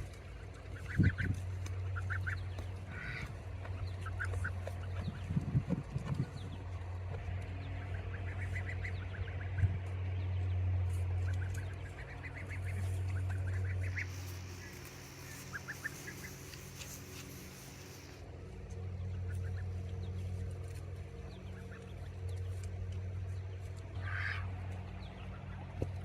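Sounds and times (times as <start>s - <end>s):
low hum: 0.0s - 26.0s
chickens clucking: 11.0s - 18.2s.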